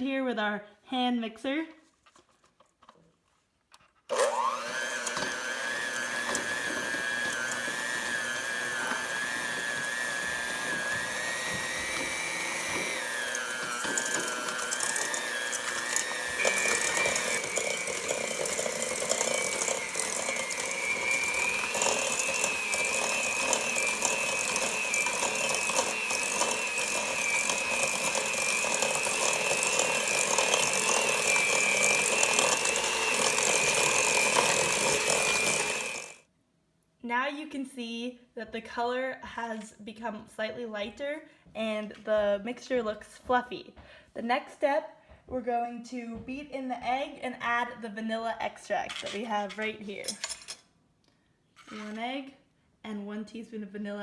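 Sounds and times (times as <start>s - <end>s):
electric hand mixer whining: 4.1s - 36.2s.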